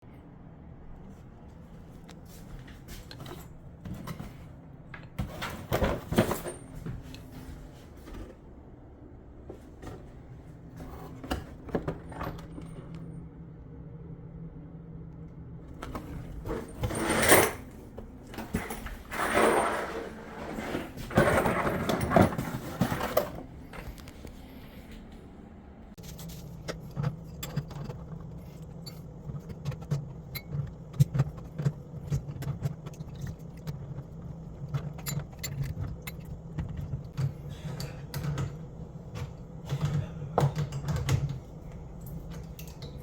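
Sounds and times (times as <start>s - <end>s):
clatter of objects being handled: 2.3s - 8.4s, 15.8s - 24.4s.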